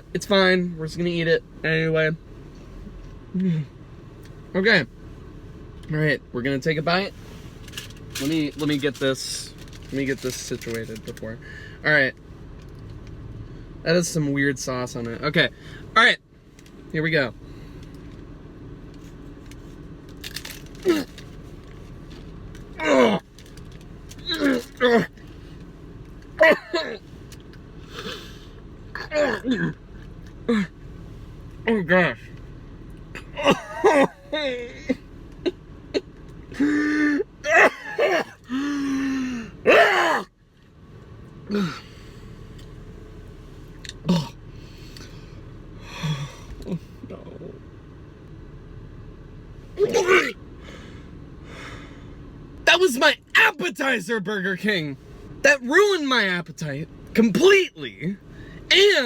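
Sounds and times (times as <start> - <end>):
low car hum: 0.0 - 59.0
man groaning in disgust: 22.8 - 23.2, 29.0 - 29.8, 36.6 - 40.3, 41.5 - 41.9, 44.0 - 44.4, 49.8 - 50.4
man grunting: 22.8 - 23.2, 29.0 - 29.8, 36.6 - 40.3, 41.5 - 41.9, 44.0 - 44.4, 49.8 - 50.4
person humming or groaning: 22.8 - 23.2.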